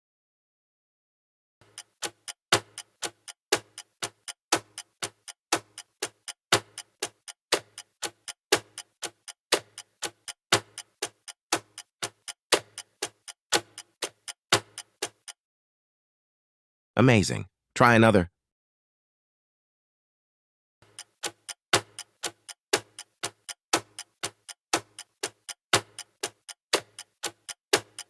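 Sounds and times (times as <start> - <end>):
countdown timer ticking: 1.6 - 15.4, 20.8 - 28.0.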